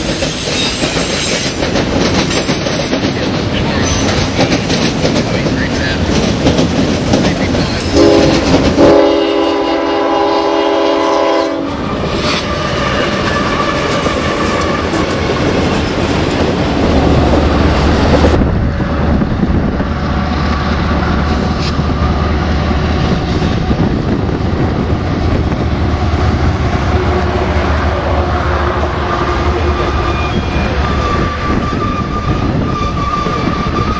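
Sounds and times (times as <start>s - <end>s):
train wheels clattering on rails: 0.0s - 9.7s, 10.7s - 33.9s
locomotive horn blast: 7.8s - 14.6s, 26.9s - 33.4s.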